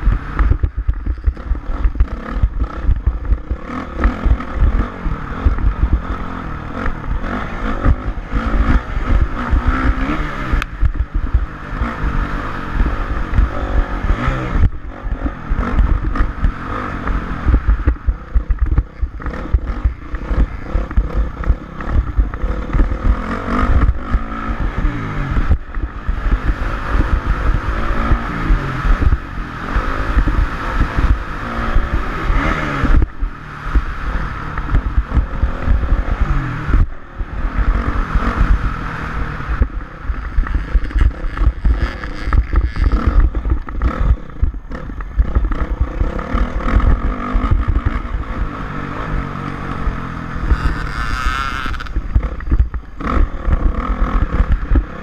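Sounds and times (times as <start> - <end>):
dirt bike engine revving: 0.0 - 55.0.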